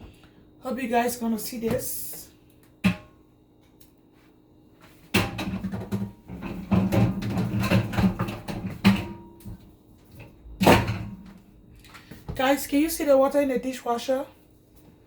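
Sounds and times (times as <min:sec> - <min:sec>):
dishwasher racks rattling: 0:05.2 - 0:09.2.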